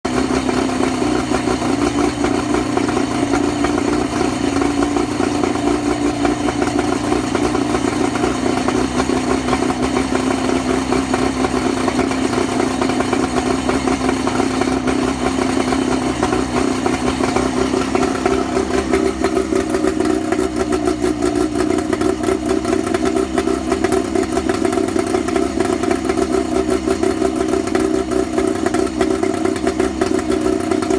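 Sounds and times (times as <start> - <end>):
outboard motor idling unevenly: 0.1 - 30.9.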